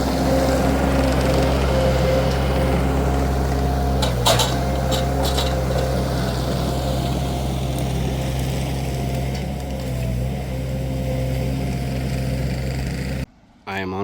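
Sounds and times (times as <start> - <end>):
skid steer engine running: 0.0 - 13.3
sharp metal clanks: 4.0 - 5.9.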